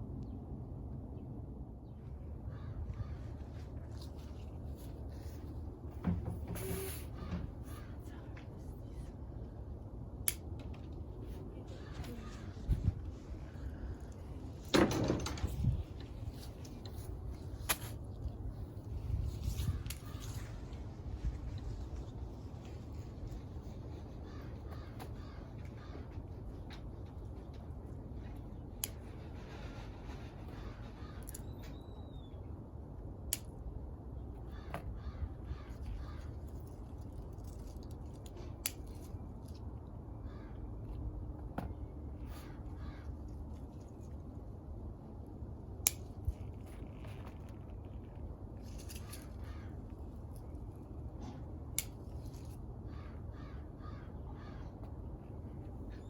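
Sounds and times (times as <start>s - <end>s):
crows cawing faintly: 2.4s - 4.1s, 7.1s - 8.4s, 11.6s - 14.3s, 23.6s - 27.5s, 28.9s - 31.8s, 34.4s - 36.8s, 40.1s - 41.0s, 41.7s - 43.7s, 48.6s - 50.6s, 52.2s - 56.0s
scissors snipping plant stems: 10.2s - 10.9s, 28.3s - 29.2s, 33.3s - 33.6s, 36.4s - 39.6s, 45.8s - 47.3s, 48.6s - 50.6s, 51.3s - 52.6s.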